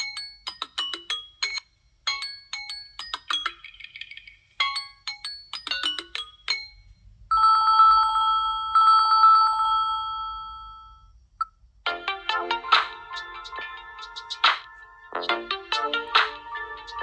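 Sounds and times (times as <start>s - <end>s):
electronic telephone bell ring: 7.3s - 11.1s.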